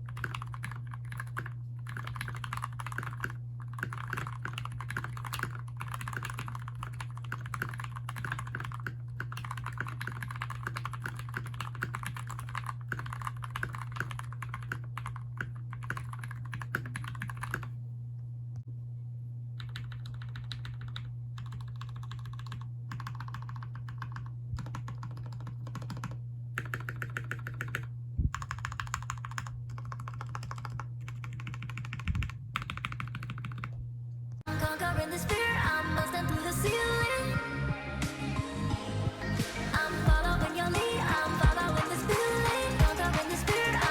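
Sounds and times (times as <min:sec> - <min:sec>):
mechanical keyboard typing: 0:00.0 - 0:17.7, 0:19.6 - 0:33.8
steady low hum: 0:00.0 - 0:43.9.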